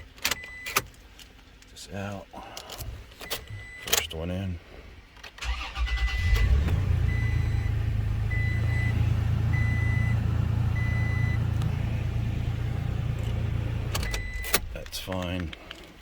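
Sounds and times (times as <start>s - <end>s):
truck engine starting and idling: 5.4s - 15.4s.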